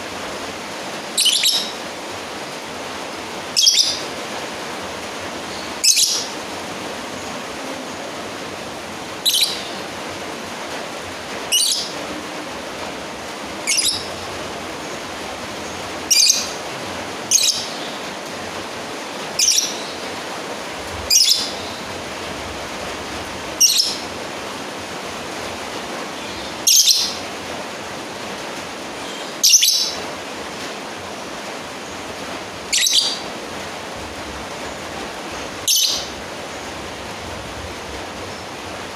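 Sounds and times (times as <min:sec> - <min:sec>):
steady hiss: 0:00.0 - 0:38.9
bird giving shrill calls: 0:01.2 - 0:01.8, 0:03.6 - 0:04.0, 0:09.2 - 0:09.7, 0:13.7 - 0:14.1.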